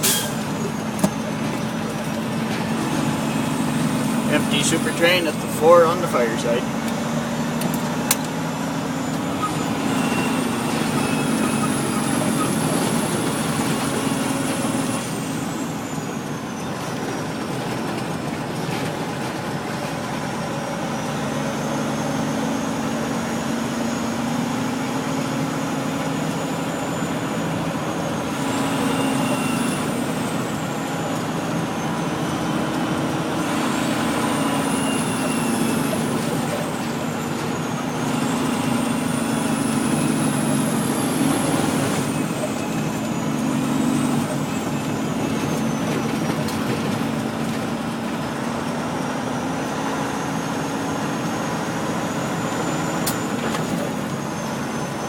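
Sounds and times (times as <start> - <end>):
diesel truck engine under load: 0.0 - 55.0
truck rattling on gravel road: 0.0 - 55.0
turbo whistle: 9.3 - 13.5, 28.3 - 30.0, 33.4 - 36.6.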